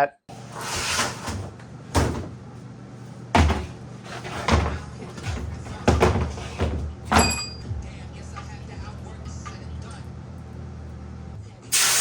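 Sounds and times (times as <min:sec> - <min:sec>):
sharp knocks and thumps: 0:03.3 - 0:07.2.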